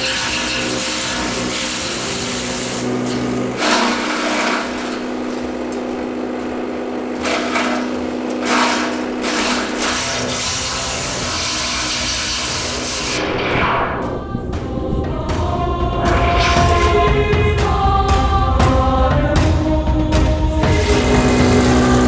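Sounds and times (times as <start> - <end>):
wood being chipped: 0.0 - 13.2
wood chipper humming: 0.0 - 13.2, 20.6 - 22.0.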